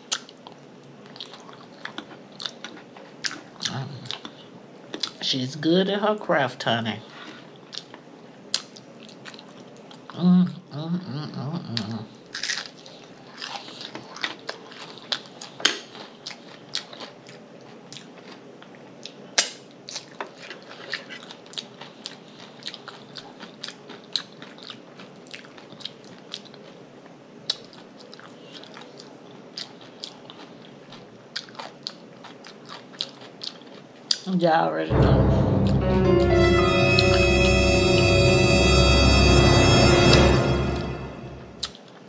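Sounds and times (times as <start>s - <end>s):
person chewing with lip smacks: 27.5s - 34.3s.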